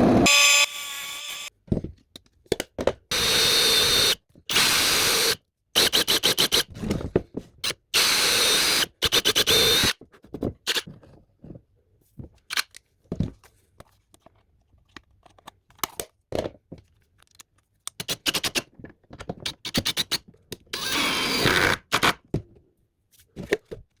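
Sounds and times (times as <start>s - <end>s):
cordless drill running: 3.1s - 6.5s, 8.0s - 9.9s, 20.8s - 21.8s.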